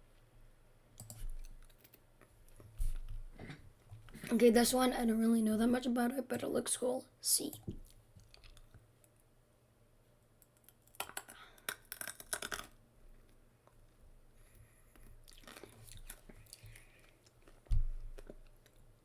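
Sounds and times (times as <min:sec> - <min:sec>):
faint clicking and crackling: 0:01.0 - 0:04.4, 0:07.4 - 0:09.3, 0:10.4 - 0:19.0.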